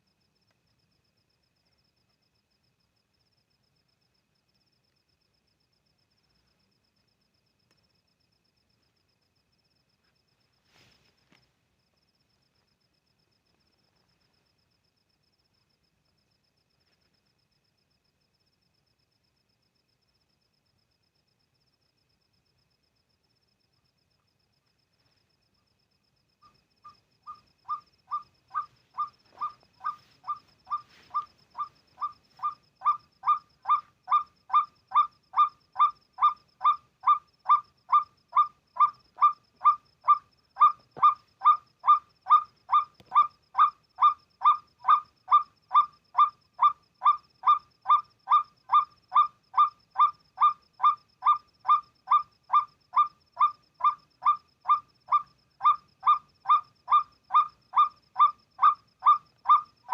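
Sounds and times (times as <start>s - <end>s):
waterhen calling kwak: 27.3s - 59.9s.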